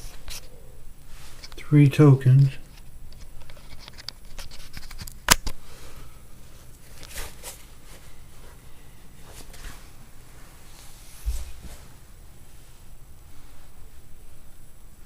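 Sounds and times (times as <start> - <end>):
faint rustles and scrapes: 0.0 - 1.6, 2.6 - 14.5.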